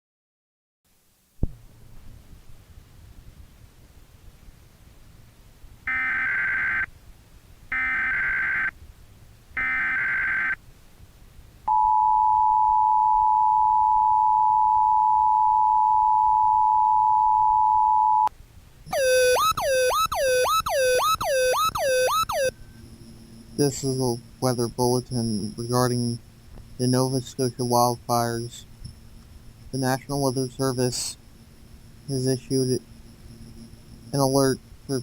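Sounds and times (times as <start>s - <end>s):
two-tone attention signal: 11.7s - 18.3s
falling electronic whoops: 18.9s - 22.6s
data tone bursts: 18.9s - 26.2s, 32.0s - 35.0s.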